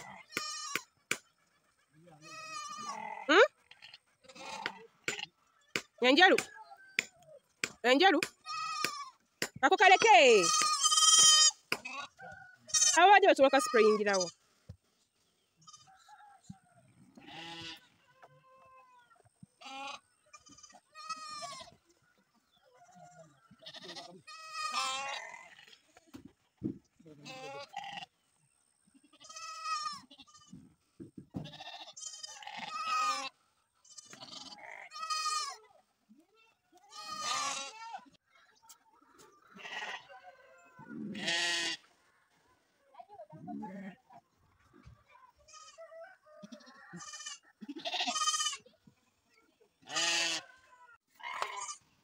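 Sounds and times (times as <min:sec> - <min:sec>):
livestock bleating: 0:00.0 - 0:00.9, 0:02.1 - 0:05.3, 0:08.4 - 0:14.4, 0:15.6 - 0:16.0, 0:17.2 - 0:21.8, 0:22.8 - 0:25.9, 0:27.1 - 0:28.2, 0:28.8 - 0:30.6, 0:31.4 - 0:35.8, 0:36.8 - 0:38.2, 0:39.5 - 0:41.9, 0:45.4 - 0:48.8, 0:49.8 - 0:51.9.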